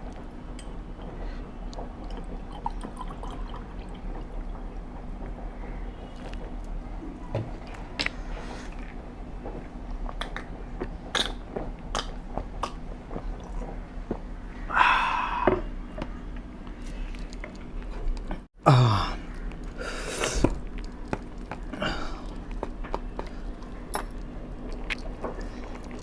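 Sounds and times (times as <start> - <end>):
chewing and crunching food: 7.6 - 14.3, 19.2 - 26.0.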